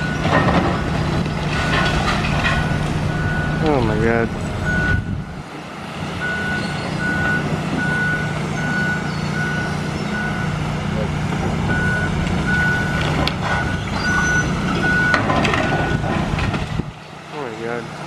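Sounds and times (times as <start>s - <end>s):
backup alarm beeping: 2.6s - 5.4s, 6.2s - 10.6s, 11.7s - 16.0s.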